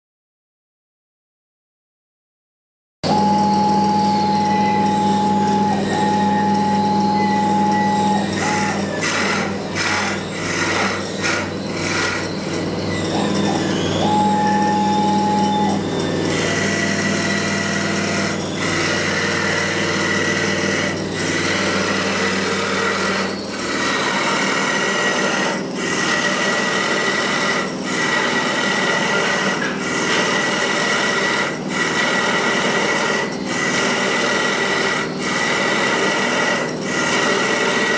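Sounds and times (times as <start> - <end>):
lathe motors whining: 3.0 - 37.9
cutter rasping on spinning wood: 3.6 - 37.9.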